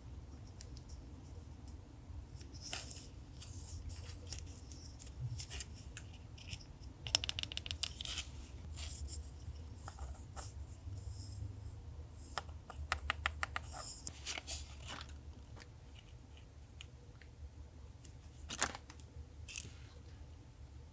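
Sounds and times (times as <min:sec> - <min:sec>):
paper rustling and scratching: 0:13.7 - 0:15.2.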